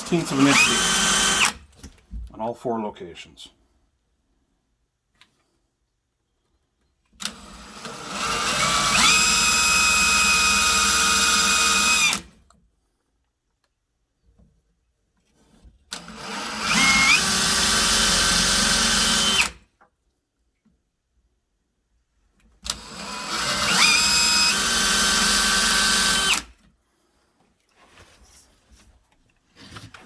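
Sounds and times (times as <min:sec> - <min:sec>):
power drill whining: 0:00.0 - 0:01.6, 0:07.2 - 0:12.4, 0:15.9 - 0:19.6, 0:22.6 - 0:26.5.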